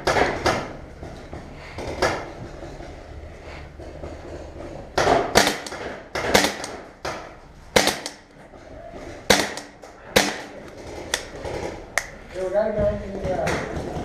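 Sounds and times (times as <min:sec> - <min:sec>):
paintball marker shots: 0:05.0 - 0:07.2, 0:07.8 - 0:08.3, 0:09.3 - 0:12.2.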